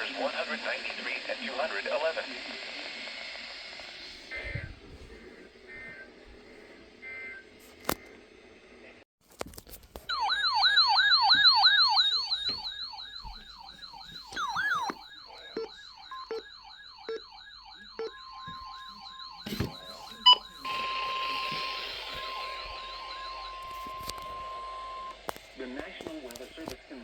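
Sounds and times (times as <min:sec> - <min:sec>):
warbling alert alarm siren: 0:10.1 - 0:25.6
steady alert tone: 0:10.8 - 0:25.1.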